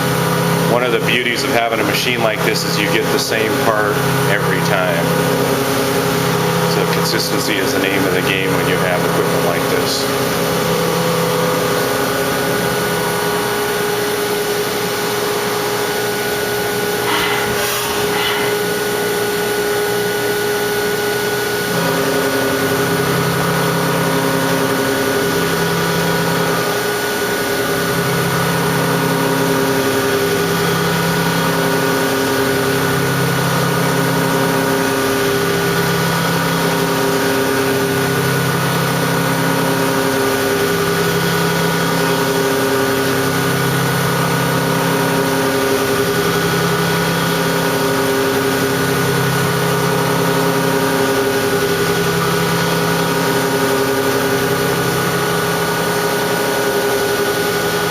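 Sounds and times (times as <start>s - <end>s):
low machine hum: 0.0s - 29.0s
machine spindle tones: 16.7s - 20.2s.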